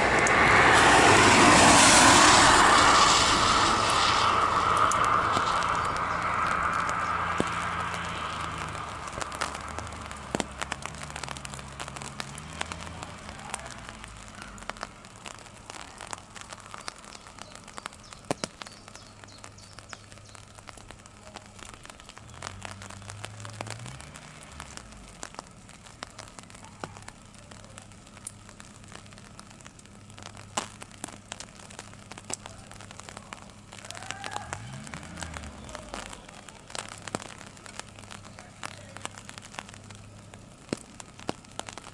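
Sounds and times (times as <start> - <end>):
low droning hum: 0.0 - 10.8
raindrops tapping on umbrella: 4.0 - 41.9.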